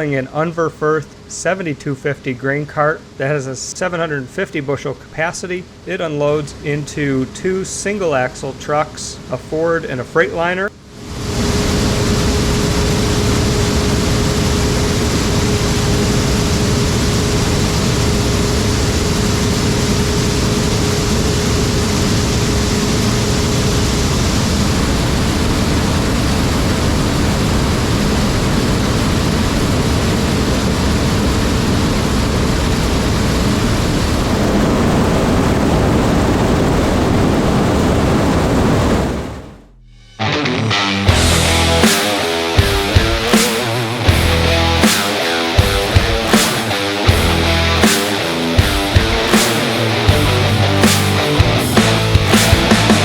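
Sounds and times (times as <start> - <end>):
steady machine whine: 0.0 - 53.0
diesel machinery running: 41.1 - 53.0.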